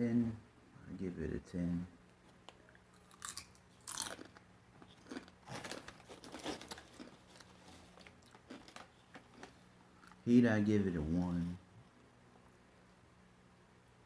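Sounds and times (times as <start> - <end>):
person chewing crunchy chips: 2.9 - 10.2.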